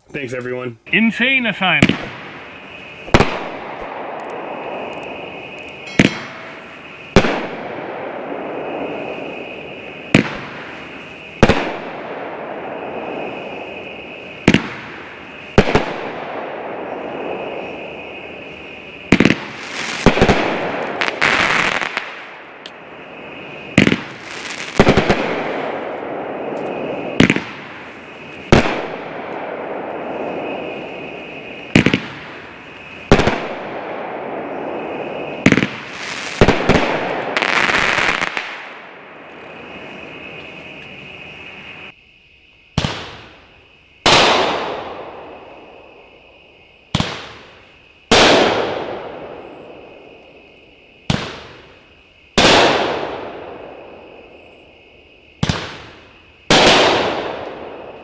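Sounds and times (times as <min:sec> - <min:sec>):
crackling sizzle: 0:00.3 - 0:58.0
firework shell breaking: 0:05.0 - 0:07.6.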